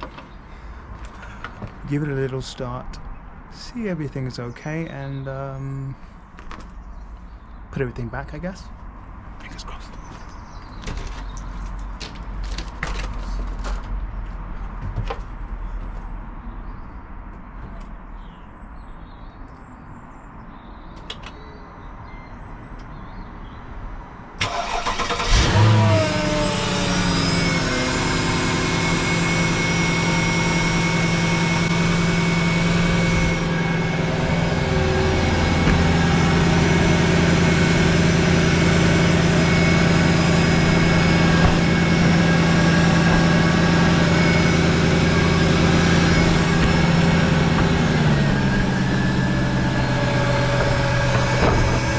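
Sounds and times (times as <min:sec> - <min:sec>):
car engine revving and idling: 0:24.4 - 0:51.9.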